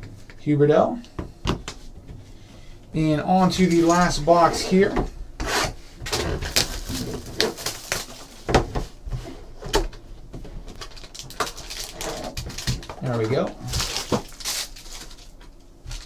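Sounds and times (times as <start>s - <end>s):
shrink wrap crinkling and tearing: 6.1s - 8.4s, 10.7s - 16.0s.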